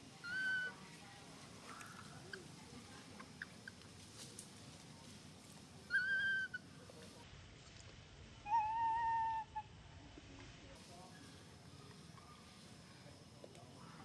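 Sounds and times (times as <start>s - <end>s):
baby monkey high call: 0.2s - 0.8s, 5.9s - 6.6s, 8.5s - 9.6s
faint ticks and rustles: 0.7s - 5.9s, 10.0s - 14.0s.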